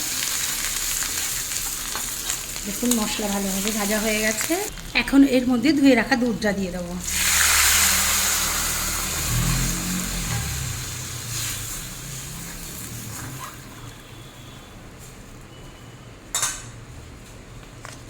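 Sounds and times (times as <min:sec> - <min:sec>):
liquid sizzling in hot oil: 0:00.0 - 0:14.0.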